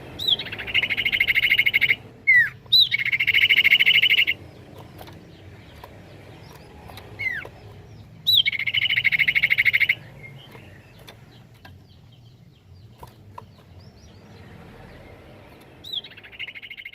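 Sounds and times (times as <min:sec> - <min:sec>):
faint bird chirps: 0:00.0 - 0:16.9
bird whistling and trilling: 0:00.2 - 0:04.4, 0:08.2 - 0:10.6, 0:15.8 - 0:16.9.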